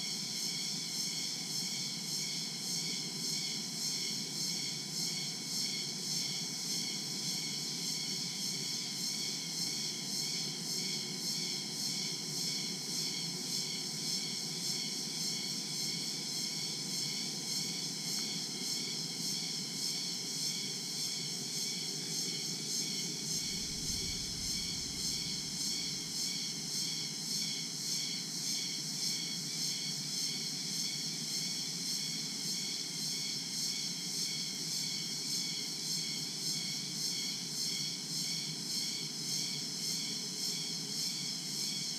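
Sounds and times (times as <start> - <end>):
crickets trilling: 0.1 - 41.9
low rumble: 23.5 - 25.4.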